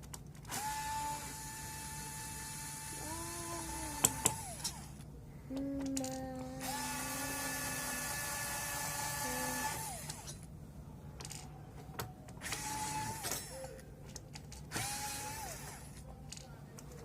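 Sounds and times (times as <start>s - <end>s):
small electric motor whirring: 0.5s - 5.0s, 5.9s - 10.4s, 12.4s - 13.5s, 14.7s - 16.0s.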